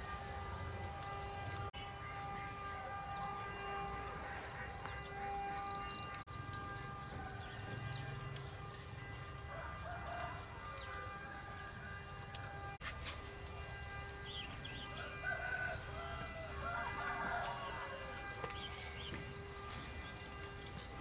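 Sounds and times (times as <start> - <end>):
farm fowl calling: 9.3 - 12.6, 14.8 - 20.4.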